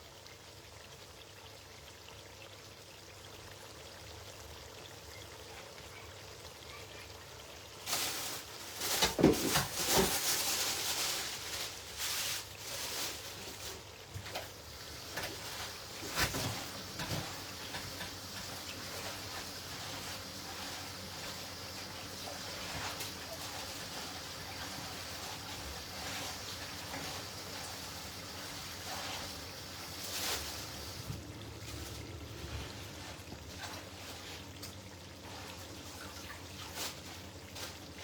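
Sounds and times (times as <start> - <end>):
faint steady hiss: 0.0 - 38.0
water pouring and splashing: 0.0 - 38.0.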